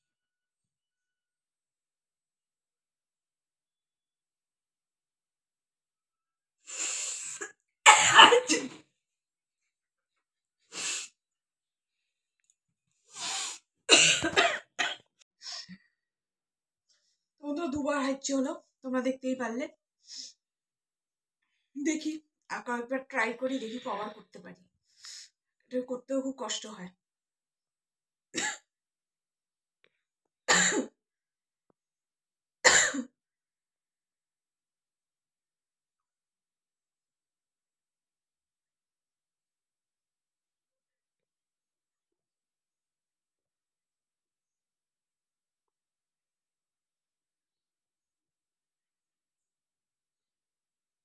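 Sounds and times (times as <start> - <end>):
person sneezing: 7.2 - 8.8
man coughing harshly: 7.9 - 8.8, 13.9 - 15.0, 32.7 - 33.0.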